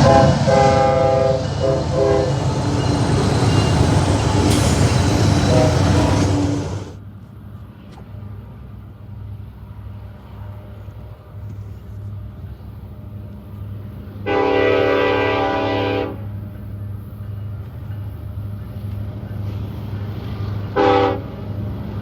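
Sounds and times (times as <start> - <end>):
locomotive air horn blast: 0.0 - 2.7, 4.2 - 7.0, 14.2 - 16.3, 20.7 - 21.4.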